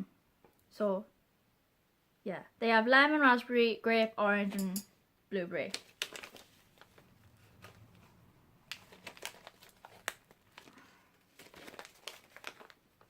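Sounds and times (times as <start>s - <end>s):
plastic candy wrapper crinkling: 5.6s - 8.0s, 8.6s - 13.0s.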